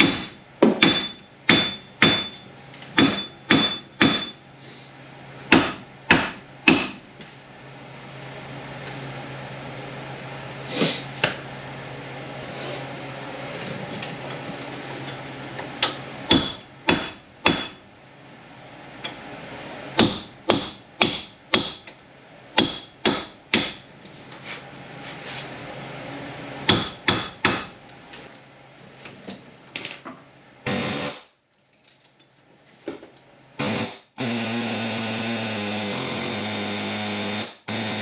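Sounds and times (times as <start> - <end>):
hammer striking metal: 0.0 - 2.4, 3.0 - 4.4, 5.5 - 7.0, 15.8 - 17.8, 20.0 - 21.9, 22.6 - 23.8, 26.7 - 27.8.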